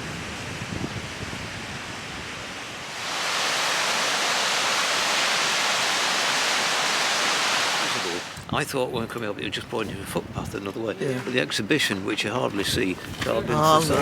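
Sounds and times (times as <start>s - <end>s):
rushing water: 0.0s - 8.5s.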